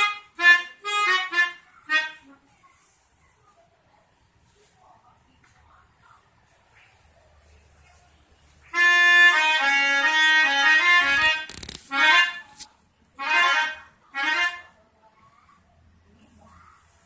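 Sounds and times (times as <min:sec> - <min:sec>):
melodica tune: 0:00.0 - 0:02.3, 0:08.7 - 0:14.7.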